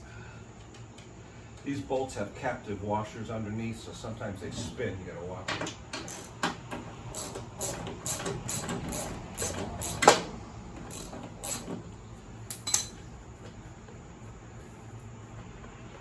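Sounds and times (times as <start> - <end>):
socket ratchet clicking: 6.0 - 6.5, 7.1 - 10.2, 10.8 - 11.8.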